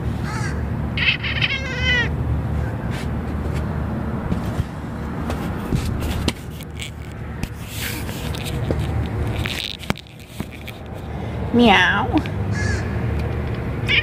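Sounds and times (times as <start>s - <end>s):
scraping rustling noise: 2.5s - 11.2s.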